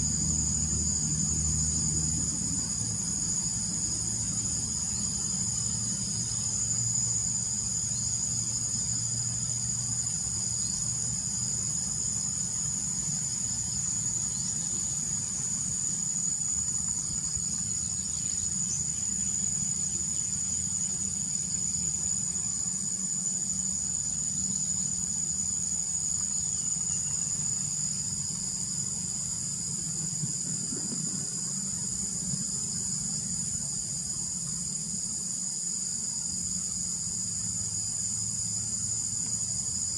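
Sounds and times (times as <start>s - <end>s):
crickets trilling: 0.0s - 39.9s.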